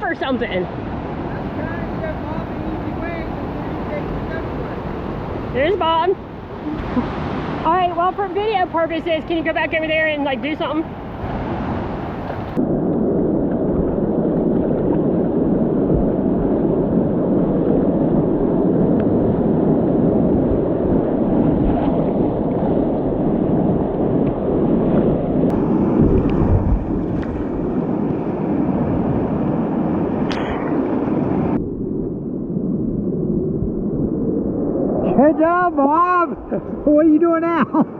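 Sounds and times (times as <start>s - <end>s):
low rumble: 12.5s - 37.0s.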